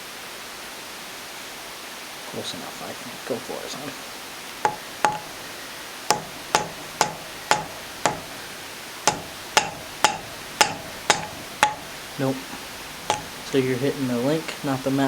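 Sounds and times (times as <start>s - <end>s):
hammer tapping on metal: 4.7s - 5.5s, 6.1s - 13.6s.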